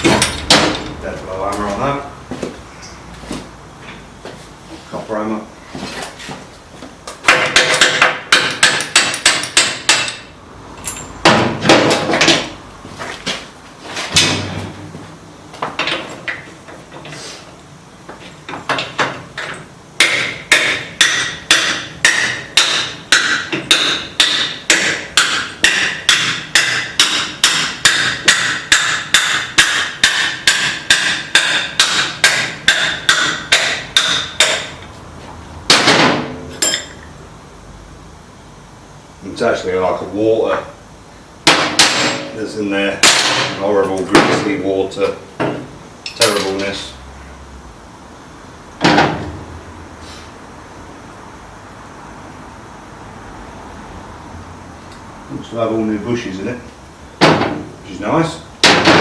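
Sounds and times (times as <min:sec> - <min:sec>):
hammer striking steel: 0:07.3 - 0:10.3, 0:20.0 - 0:34.8, 0:41.5 - 0:42.4.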